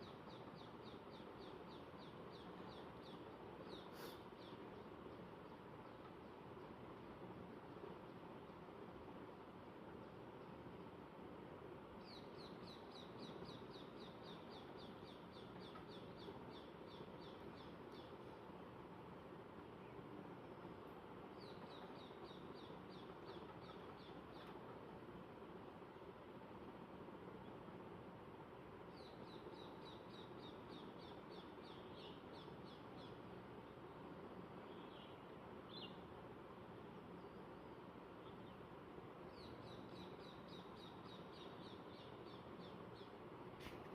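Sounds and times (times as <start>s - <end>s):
bird singing: 0.0s - 5.6s, 12.0s - 18.4s, 21.3s - 24.6s, 28.9s - 34.0s, 34.6s - 36.1s, 39.3s - 43.2s
small bird chirping: 0.0s - 5.6s, 34.7s - 36.1s, 39.3s - 43.2s
faint background hiss: 0.0s - 43.9s.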